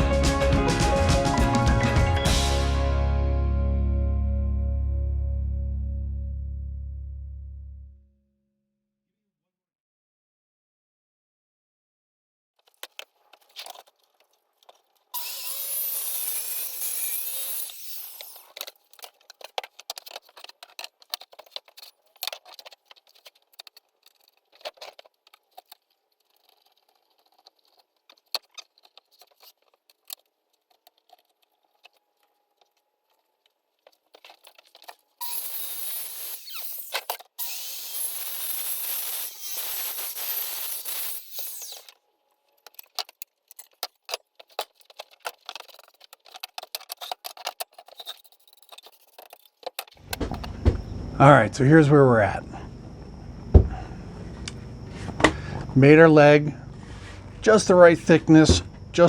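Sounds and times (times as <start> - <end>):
power tool working wood: 15.2 - 18.6, 35.2 - 42.0
wood knocks and clicks: 49.2 - 50.9.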